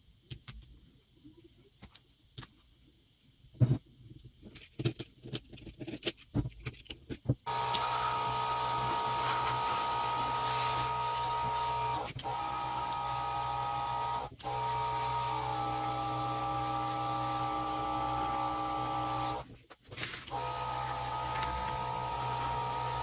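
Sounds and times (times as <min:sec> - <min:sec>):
electric power tool whining: 0:07.5 - 0:19.5, 0:20.2 - 0:23.0.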